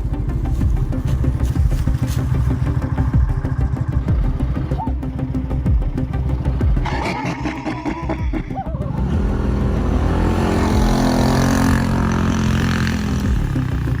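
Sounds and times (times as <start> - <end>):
car engine humming: 0.0 - 14.0.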